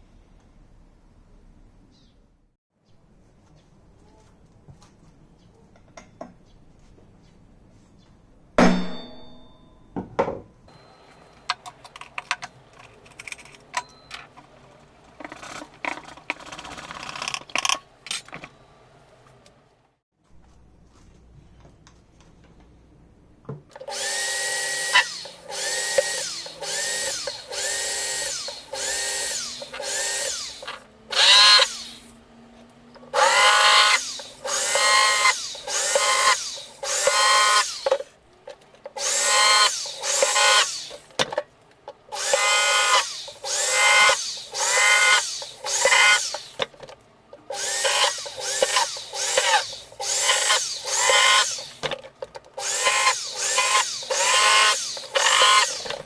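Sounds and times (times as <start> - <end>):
cordless drill spinning: 11.6 - 17.8, 23.9 - 32.2, 33.1 - 38.1, 38.9 - 41.3, 42.1 - 46.8, 47.5 - 56.0.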